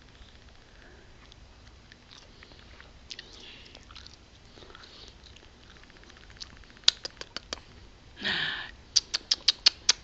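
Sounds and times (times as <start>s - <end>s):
baby mouth clicks: 6.2s - 7.6s, 9.0s - 10.0s.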